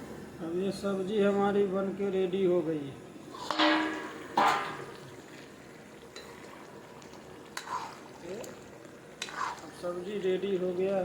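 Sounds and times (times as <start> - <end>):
curry simmering sizzle: 2.4 - 11.0
spoon scraping metal pan: 9.2 - 9.7.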